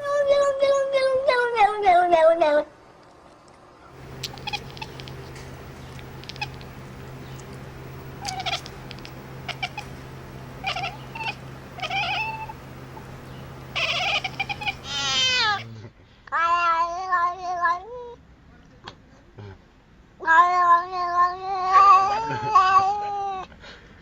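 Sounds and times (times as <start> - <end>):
cat meowing: 4.0 - 15.7.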